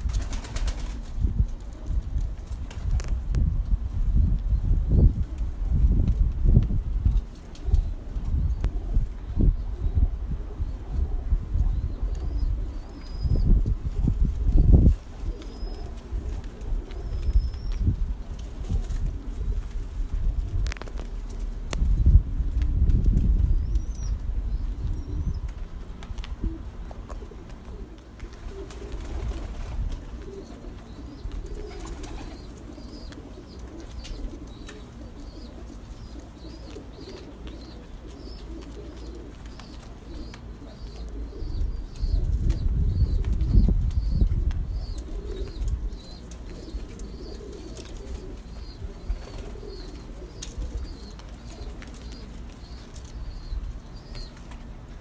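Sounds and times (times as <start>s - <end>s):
pigeons cooing: 7.2s - 21.3s, 26.3s - 55.0s
small birds chirping: 14.6s - 16.0s, 16.9s - 17.9s, 28.5s - 54.6s.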